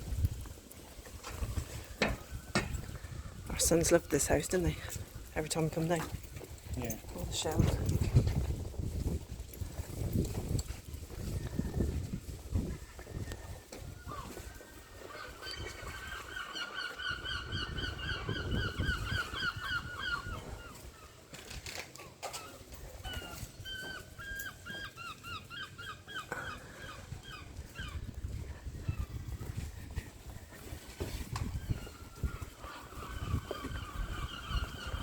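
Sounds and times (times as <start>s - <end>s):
large bird rapid repeated calls: 31.8s - 35.0s.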